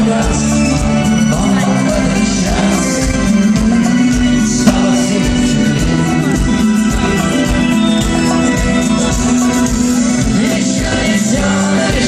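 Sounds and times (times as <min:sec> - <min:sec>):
sustained guitar notes: 0:03.6 - 0:07.8
sharp drum hit: 0:04.6 - 0:05.7
drum beat: 0:04.6 - 0:07.3.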